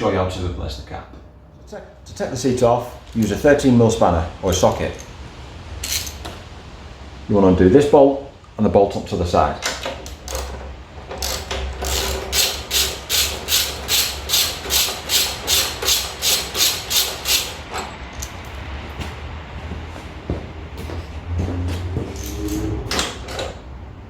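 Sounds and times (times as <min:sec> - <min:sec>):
socket ratchet clicking: 0:05.8 - 0:06.2, 0:11.2 - 0:17.6.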